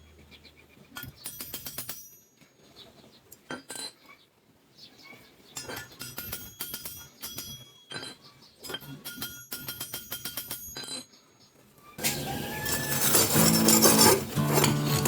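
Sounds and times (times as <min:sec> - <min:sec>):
small metal pieces clinking: 0:12.6 - 0:15.0.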